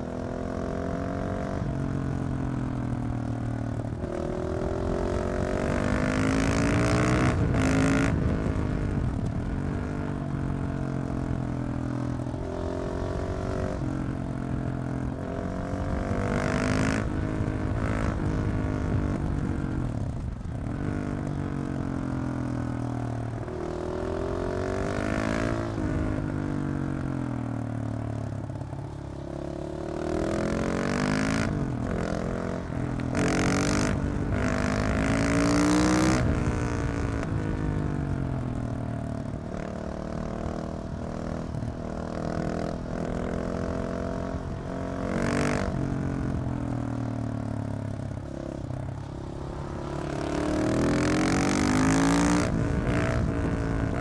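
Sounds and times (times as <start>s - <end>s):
motorcycle engine accelerating: 0.0s - 54.0s.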